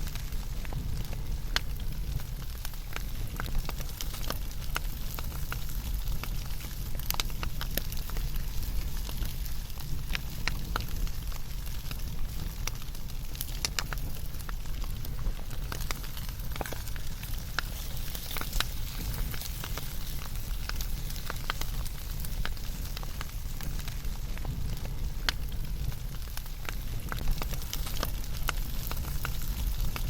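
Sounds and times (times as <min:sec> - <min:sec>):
low rumble of flames: 0:00.0 - 0:30.0
wood fire crackling and popping: 0:00.0 - 0:30.0.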